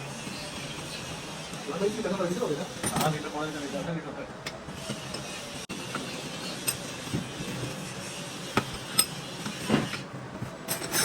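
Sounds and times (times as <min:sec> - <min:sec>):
metal tools clinking and tapping: 0:10.7 - 0:11.0.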